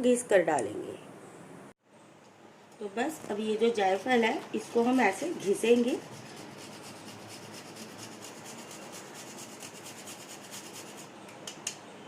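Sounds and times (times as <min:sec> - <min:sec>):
nutmeg scraping on grater: 0:03.7 - 0:11.1.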